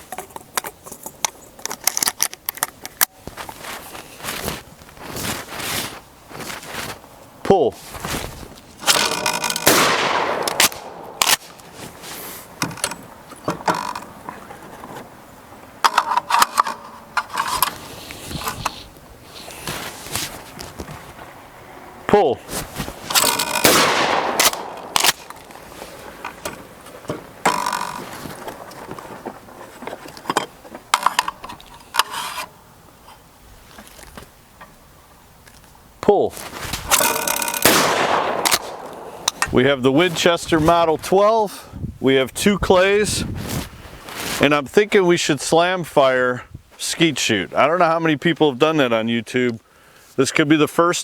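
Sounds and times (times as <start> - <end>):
shotgun blast echoing: 8.8 - 11.6, 23.1 - 25.6, 37.6 - 39.4.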